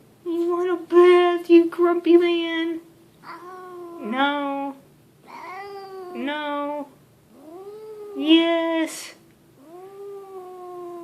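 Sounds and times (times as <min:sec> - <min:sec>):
cat grumbling meows: 0:03.2 - 0:04.2, 0:05.2 - 0:06.4, 0:07.3 - 0:08.3, 0:09.6 - 0:11.0.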